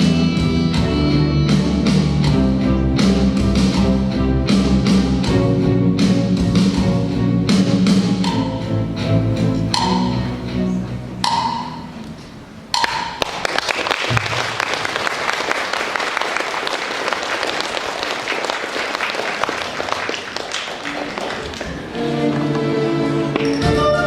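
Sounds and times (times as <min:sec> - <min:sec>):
ringing percussion strikes: 0:07.9 - 0:10.6, 0:11.2 - 0:12.0
audience applause: 0:13.2 - 0:22.4.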